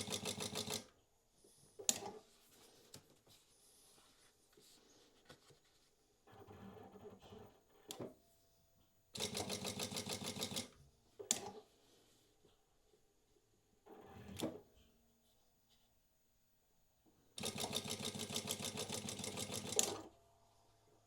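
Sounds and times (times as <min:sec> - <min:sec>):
sewing machine stitching: 0:00.0 - 0:00.9, 0:09.2 - 0:10.7, 0:17.4 - 0:20.1.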